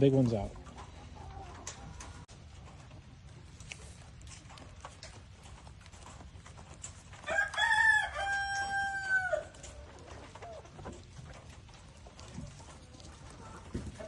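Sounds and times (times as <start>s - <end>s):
rooster crowing: 7.2s - 9.6s.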